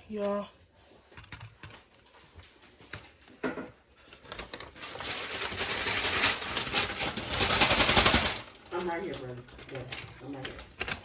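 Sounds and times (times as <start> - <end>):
popcorn kernels rattling in paper bag: 4.1 - 11.0.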